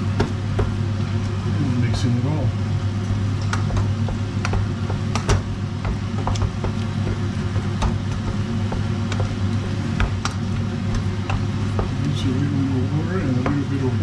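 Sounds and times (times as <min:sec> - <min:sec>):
low mechanical hum: 0:00.0 - 0:14.0
food popping in a pan: 0:03.0 - 0:12.2.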